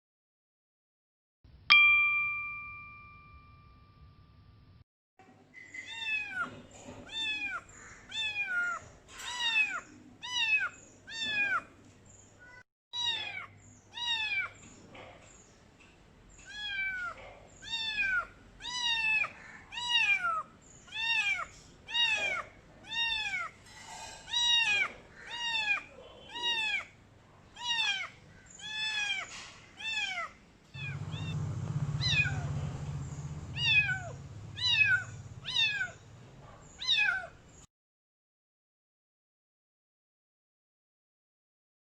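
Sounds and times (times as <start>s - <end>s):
kitten meowing: 5.8s - 6.4s, 7.1s - 11.7s, 13.0s - 14.6s, 16.4s - 23.6s, 24.2s - 26.9s, 27.6s - 31.4s, 32.0s - 32.5s, 33.5s - 36.0s, 36.8s - 37.4s
low steady rumble: 30.8s - 36.4s.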